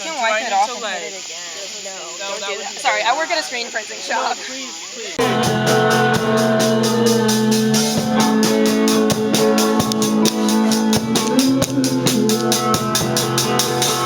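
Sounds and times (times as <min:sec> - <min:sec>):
drum kit steady beat: 0:05.2 - 0:14.0
held music tones: 0:05.2 - 0:14.0.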